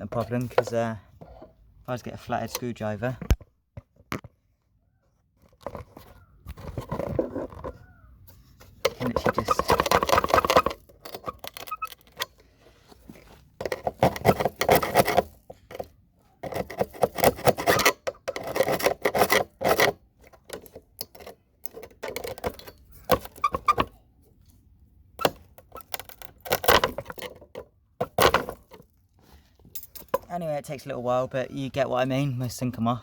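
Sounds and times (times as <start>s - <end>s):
screwdriver scraping metal pins: 8.8s - 12.4s, 13.6s - 23.9s.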